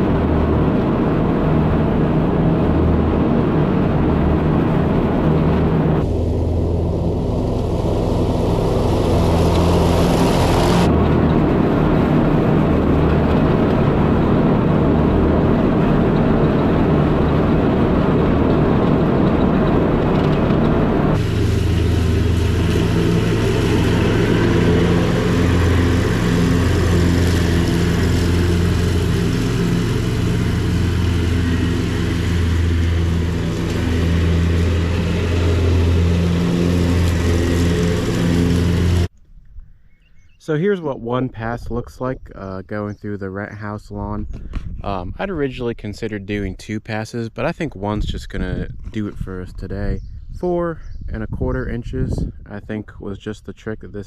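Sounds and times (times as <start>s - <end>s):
riding mower engine mowing grass: 0.0s - 39.2s.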